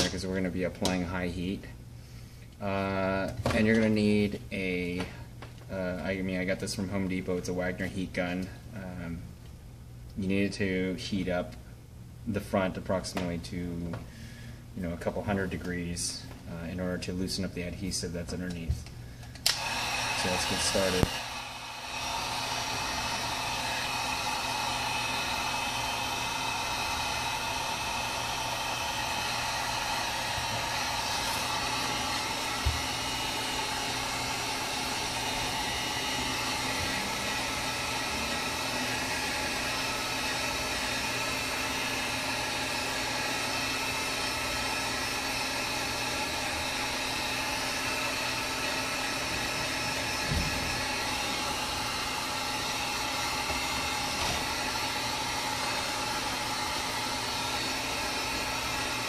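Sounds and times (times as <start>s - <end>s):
heat gun blowing: 19.2s - 59.0s.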